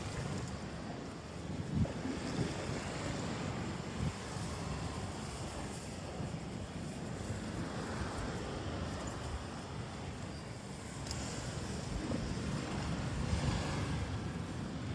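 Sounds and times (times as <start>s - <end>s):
wind buffeting the microphone: 0.0s - 14.9s.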